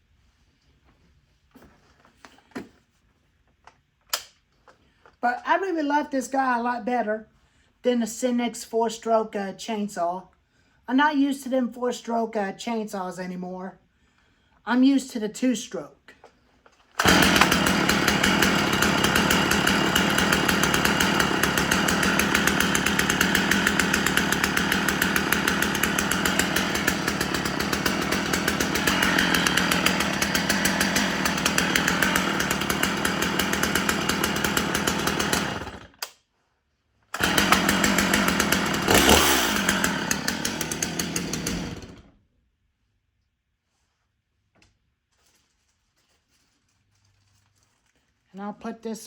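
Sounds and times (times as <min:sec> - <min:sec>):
chainsaw engine running: 0:17.0 - 0:36.0, 0:37.2 - 0:42.1.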